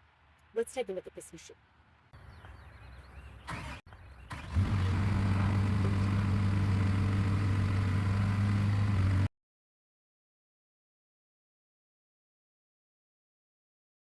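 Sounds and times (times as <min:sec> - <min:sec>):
diesel engine humming: 0:03.4 - 0:09.3.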